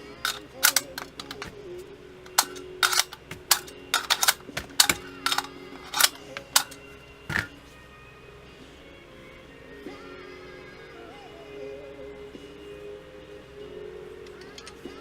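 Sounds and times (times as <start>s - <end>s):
rifle parts clicking: 0.2s - 1.6s, 2.3s - 7.5s, 14.3s - 14.8s.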